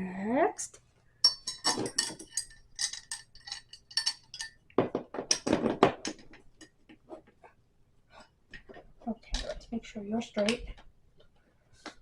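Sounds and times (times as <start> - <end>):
small metal hardware clinking: 1.2 - 4.6.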